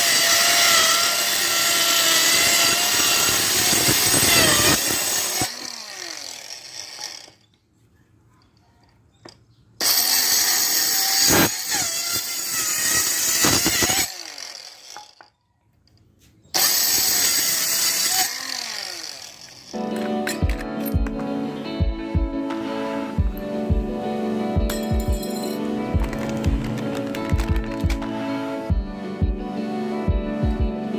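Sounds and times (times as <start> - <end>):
saw winding down: 0.0 - 7.4, 9.8 - 15.2, 16.6 - 19.9
mini circular saw motor: 0.0 - 7.5, 9.8 - 15.4, 16.6 - 19.9.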